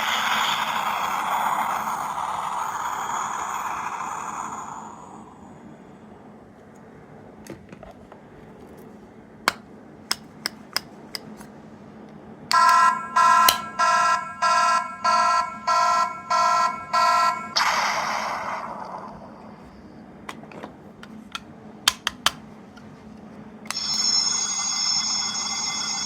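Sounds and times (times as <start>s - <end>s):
hissy noise: 0.0s - 5.9s
toy speaker two-tone alarm beeps: 12.5s - 17.6s, 23.7s - 26.0s.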